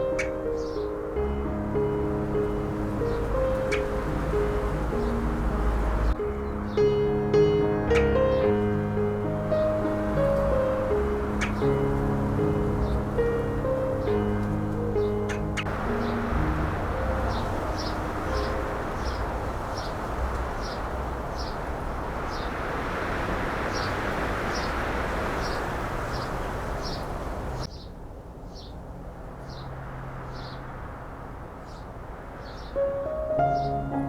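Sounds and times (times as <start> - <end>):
bird chirping: 0.0 - 22.6, 23.7 - 28.8, 31.6 - 34.0
wind blowing across microphone: 8.2 - 34.0.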